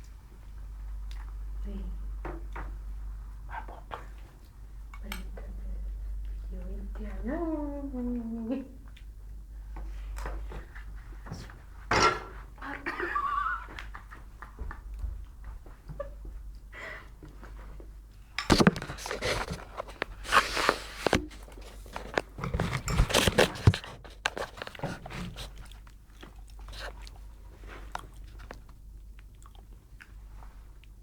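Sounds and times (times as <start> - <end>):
person chewing crunchy food: 18.7 - 31.0.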